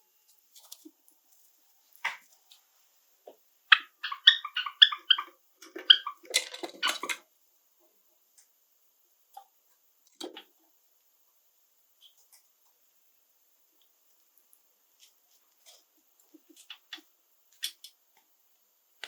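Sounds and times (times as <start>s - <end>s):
sparrow chirping song: 3.7s - 6.2s.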